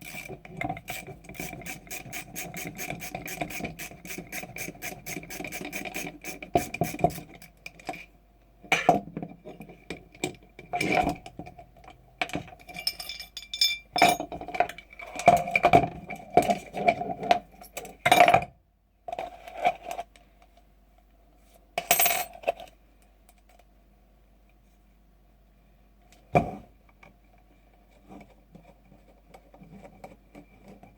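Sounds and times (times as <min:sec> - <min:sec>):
metal parts clinking: 0:12.7 - 0:14.2.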